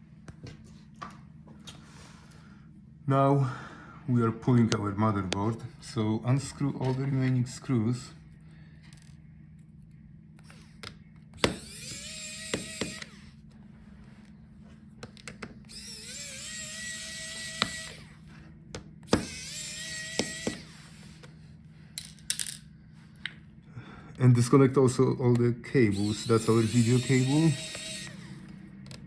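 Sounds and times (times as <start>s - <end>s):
electric screwdriver spinning: 11.4s - 13.4s, 15.7s - 18.3s, 19.1s - 21.3s, 25.9s - 29.0s.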